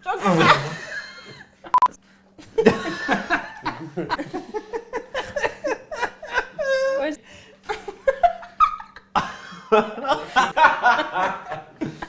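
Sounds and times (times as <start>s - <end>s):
people laughing hard: 2.4s - 12.0s.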